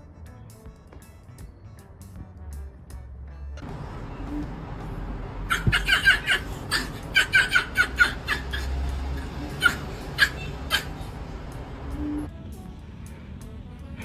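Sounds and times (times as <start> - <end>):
person laughing: 5.5 - 11.1.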